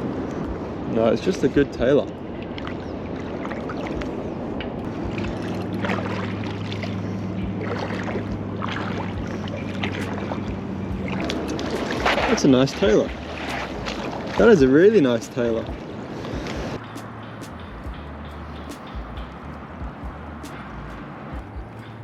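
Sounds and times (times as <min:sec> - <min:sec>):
shallow water splashing: 0:00.0 - 0:22.0
steady low hum: 0:04.0 - 0:14.7, 0:15.7 - 0:22.0.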